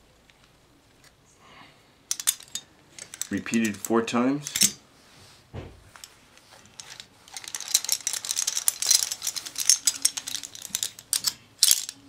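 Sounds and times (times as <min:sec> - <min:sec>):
metal glove pieces clinking: 0:02.1 - 0:04.8, 0:06.0 - 0:12.0.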